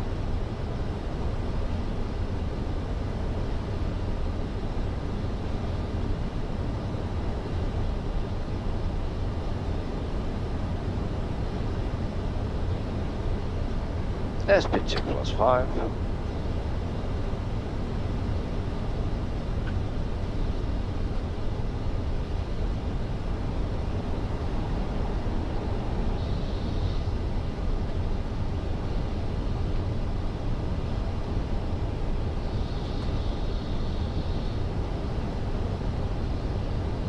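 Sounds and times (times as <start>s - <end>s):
heavy low rumble: 14.4s - 16.4s.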